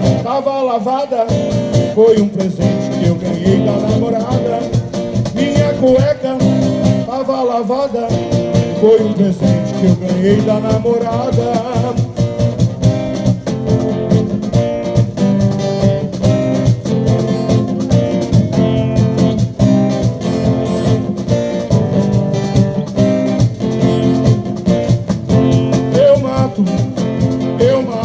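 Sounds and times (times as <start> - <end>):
strummed guitar: 0.0 - 28.0
marching band music: 8.1 - 28.0.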